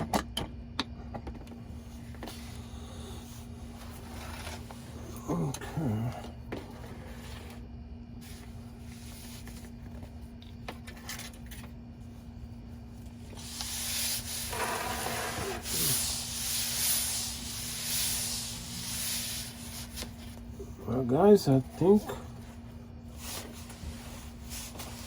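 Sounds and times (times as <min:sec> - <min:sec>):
oil pump hissing and sputtering: 0:13.1 - 0:21.2.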